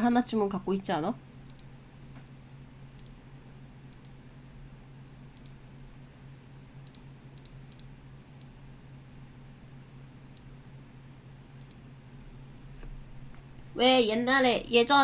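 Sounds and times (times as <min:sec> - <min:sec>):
steady low hum: 0:00.0 - 0:15.0
computer mouse clicking: 0:01.4 - 0:02.3, 0:02.9 - 0:03.2, 0:03.9 - 0:04.2, 0:05.3 - 0:05.6, 0:06.8 - 0:08.6, 0:10.3 - 0:10.5, 0:11.6 - 0:11.8.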